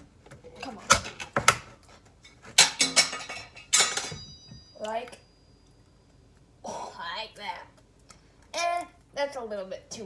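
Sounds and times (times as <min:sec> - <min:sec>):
metal pots clattering: 0:02.2 - 0:04.6.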